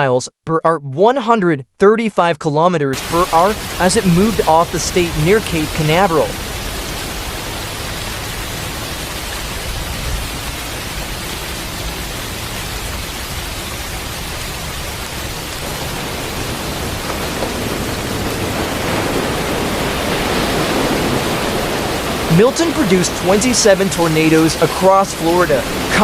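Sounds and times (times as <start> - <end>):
heavy rain and wind hiss: 3.0 - 26.0.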